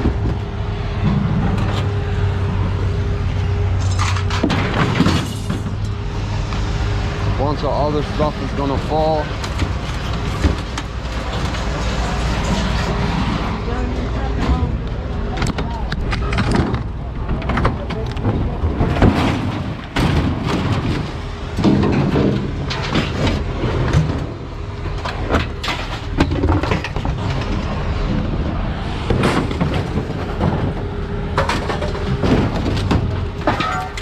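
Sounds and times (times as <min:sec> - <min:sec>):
low rumble: 0:00.0 - 0:33.6
scrap metal clanging and crashing: 0:03.7 - 0:06.4, 0:15.6 - 0:34.0.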